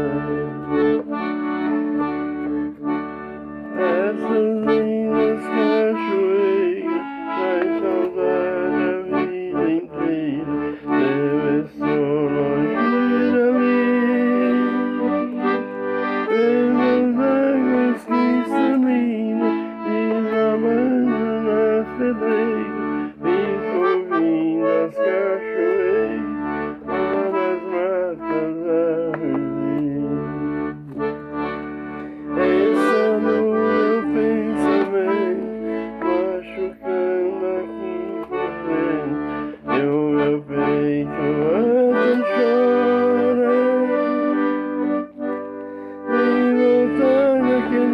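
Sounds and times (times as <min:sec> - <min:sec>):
bass notes: 0:00.0 - 0:13.6, 0:25.7 - 0:47.9.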